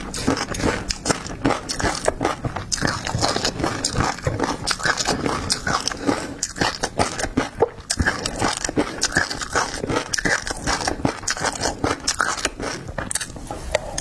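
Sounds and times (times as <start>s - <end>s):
wet chewing and smacking: 0.0s - 14.0s.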